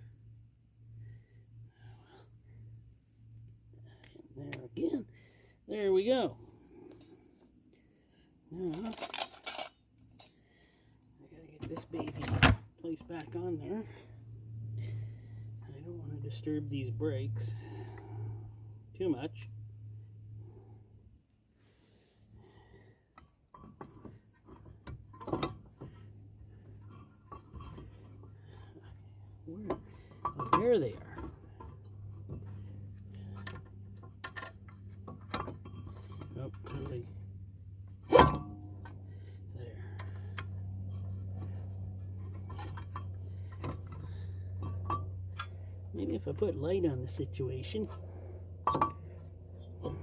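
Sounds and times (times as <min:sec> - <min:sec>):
steady low hum: 0:00.0 - 0:50.0
metal brake parts clinking: 0:08.7 - 0:10.4, 0:48.6 - 0:50.0.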